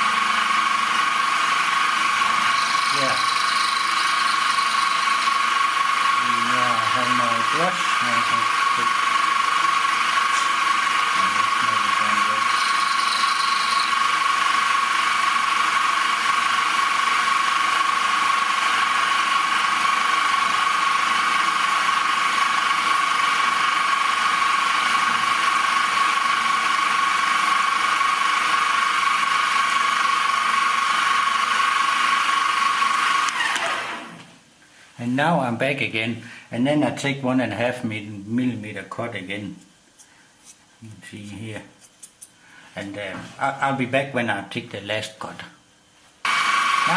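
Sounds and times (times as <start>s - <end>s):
milling machine gear whine: 0.0s - 34.1s.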